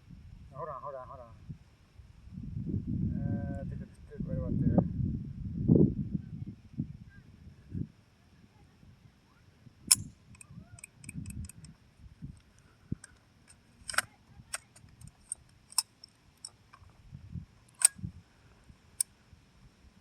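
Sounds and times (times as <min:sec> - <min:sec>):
sharp handling clicks: 0:09.9 - 0:11.7, 0:12.4 - 0:16.9, 0:17.7 - 0:18.0.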